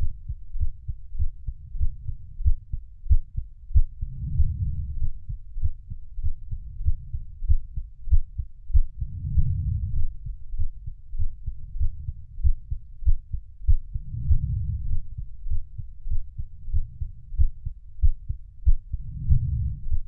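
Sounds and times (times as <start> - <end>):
human heartbeat: 0.0 - 20.0.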